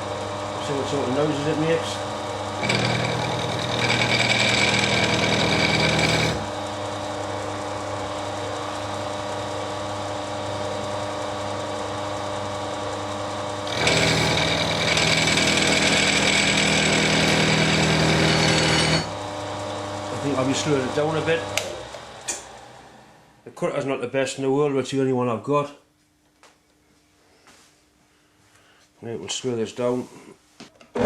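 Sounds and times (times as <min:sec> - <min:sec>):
milling machine running: 0:00.0 - 0:22.6
milling machine cutting metal: 0:00.8 - 0:06.6, 0:13.5 - 0:19.4.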